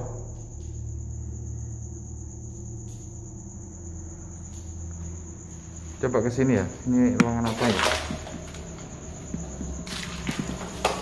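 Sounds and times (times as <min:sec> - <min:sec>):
low steady rumble: 0:00.0 - 0:07.2
crickets chirring: 0:00.0 - 0:11.0.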